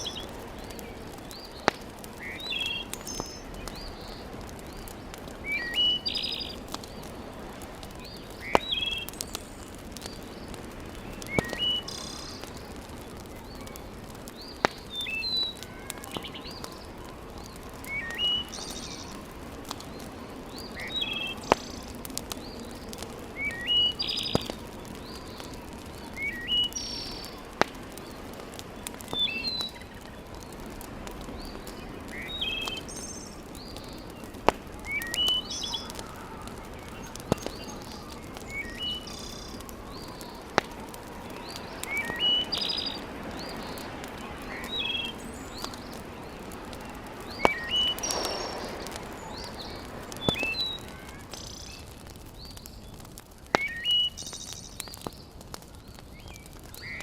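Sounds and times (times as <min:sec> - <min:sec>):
sharp fire pops: 0:00.0 - 0:57.0
wood fire crackling: 0:00.0 - 0:57.0
bird chirping: 0:47.4 - 0:51.8.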